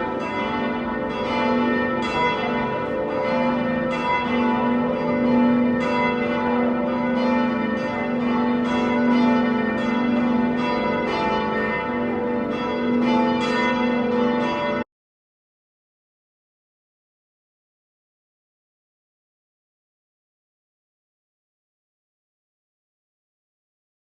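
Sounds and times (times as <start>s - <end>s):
church bells ringing: 0.0s - 14.9s.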